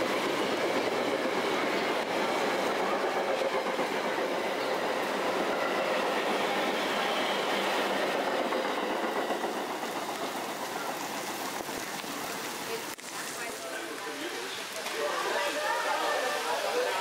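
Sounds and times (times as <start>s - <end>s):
train rumbling on rails: 0.0s - 17.0s.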